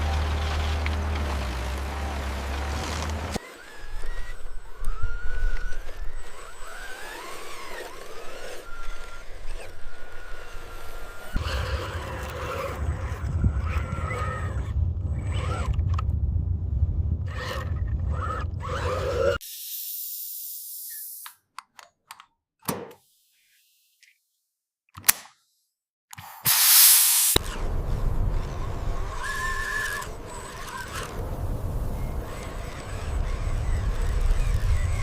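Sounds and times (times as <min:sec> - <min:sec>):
small motors whining: 0:00.0 - 0:16.1, 0:17.3 - 0:21.3, 0:26.2 - 0:35.0
low engine-like hum: 0:00.0 - 0:19.4, 0:27.4 - 0:35.0.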